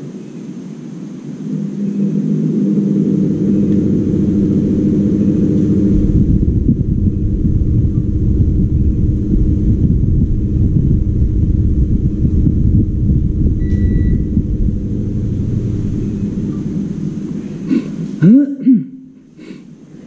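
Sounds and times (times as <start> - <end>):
steady hum: 0.0 - 20.0
loud low rumble: 0.8 - 19.8
high electronic beep: 13.6 - 14.4.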